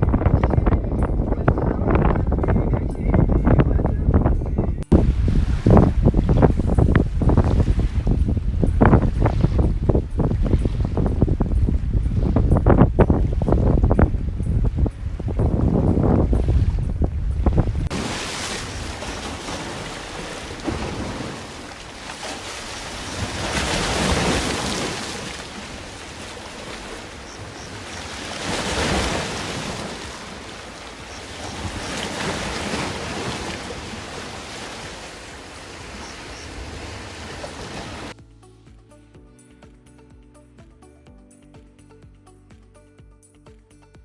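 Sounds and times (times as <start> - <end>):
wind rumbling on microphone: 0.0 - 38.2
surf washing onto beach: 4.9 - 10.0, 17.8 - 38.2.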